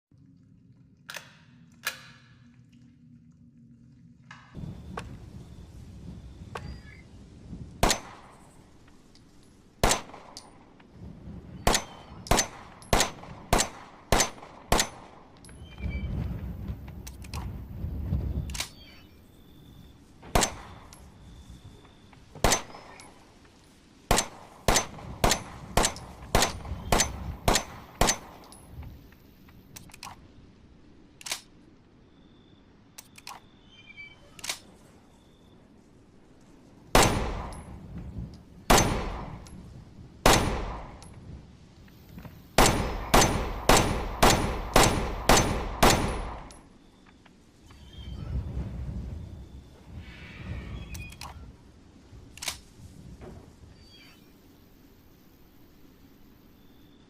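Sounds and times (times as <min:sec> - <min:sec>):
pistol shots: 0:11.7 - 0:15.2, 0:24.1 - 0:28.4, 0:37.0 - 0:37.6, 0:38.7 - 0:39.4, 0:40.2 - 0:41.0, 0:42.6 - 0:46.6.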